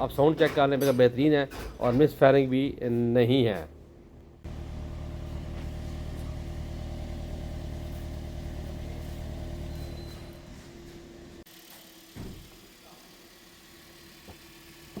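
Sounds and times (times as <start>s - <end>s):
car engine idling: 4.4s - 11.5s.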